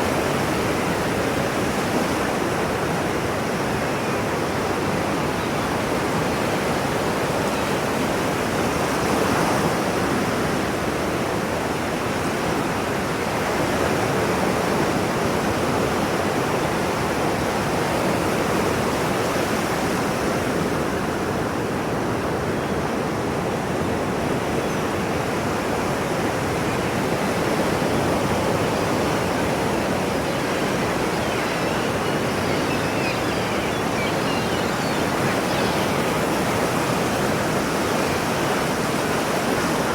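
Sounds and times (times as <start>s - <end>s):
ocean waves washing on shore: 0.0s - 39.9s.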